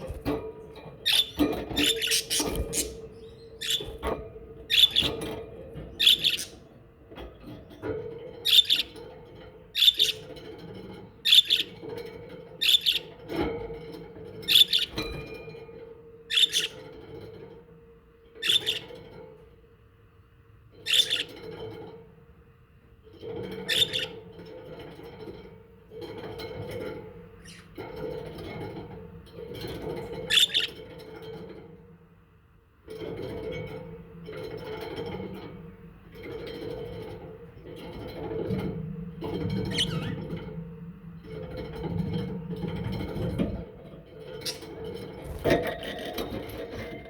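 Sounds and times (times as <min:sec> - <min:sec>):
budgerigars chirping: 0:01.0 - 0:04.1, 0:04.7 - 0:05.2, 0:06.0 - 0:06.6, 0:08.4 - 0:09.0, 0:09.8 - 0:10.4, 0:11.3 - 0:11.8, 0:12.6 - 0:13.2, 0:14.5 - 0:15.0, 0:16.3 - 0:16.8, 0:18.4 - 0:19.0, 0:20.9 - 0:21.4, 0:23.6 - 0:24.2, 0:27.4 - 0:27.7, 0:30.2 - 0:30.8, 0:39.6 - 0:40.2, 0:44.4 - 0:44.8.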